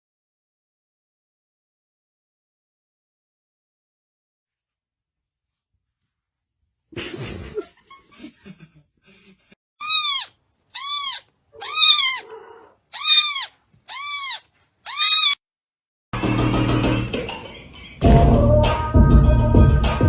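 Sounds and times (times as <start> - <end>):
kitten meowing: 9.8 - 15.4.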